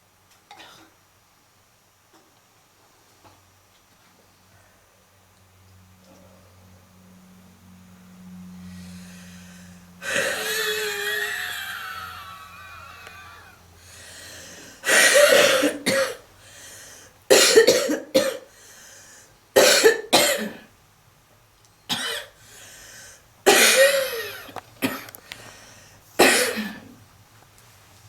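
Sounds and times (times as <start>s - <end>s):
heavy coughing: 10.0s - 13.6s, 14.8s - 16.3s, 17.3s - 18.5s, 19.6s - 20.7s, 21.9s - 22.4s, 23.5s - 25.2s, 26.2s - 26.9s.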